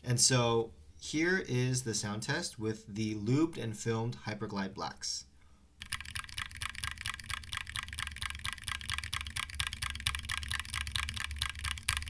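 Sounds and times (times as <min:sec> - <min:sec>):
rapid keyboard keystrokes: 0:05.8 - 0:12.0.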